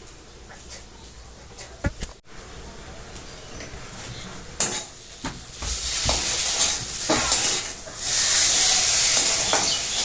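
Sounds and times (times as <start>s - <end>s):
spice paste sizzling in oil: 4.6s - 10.0s.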